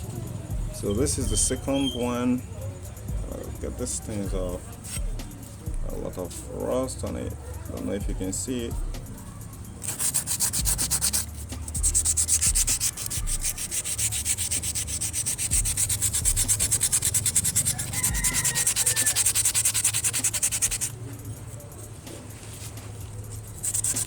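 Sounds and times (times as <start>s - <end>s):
scrubbing rust off metal: 8.3s - 24.0s.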